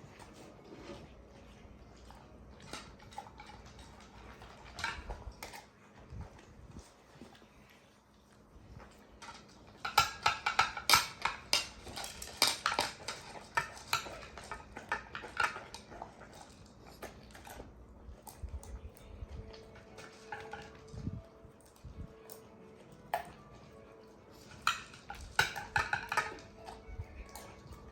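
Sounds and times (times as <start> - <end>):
dog eating from a dish: 0.0 - 27.9
dish clinking and rattling: 2.1 - 5.7, 9.2 - 17.7, 19.4 - 21.0, 22.9 - 27.9.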